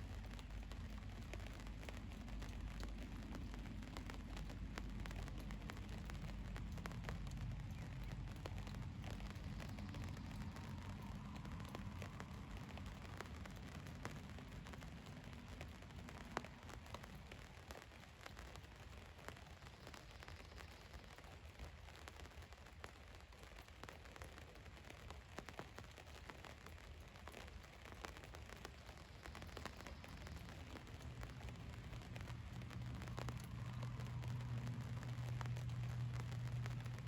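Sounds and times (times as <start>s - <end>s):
rain pattering on roof: 0.0s - 37.0s
low rumble: 29.7s - 37.0s.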